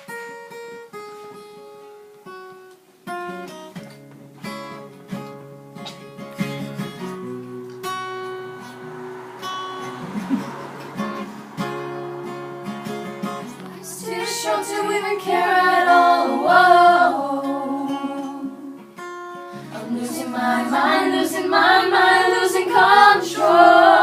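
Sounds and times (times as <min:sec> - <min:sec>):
acoustic guitar playing: 0:00.0 - 0:24.0.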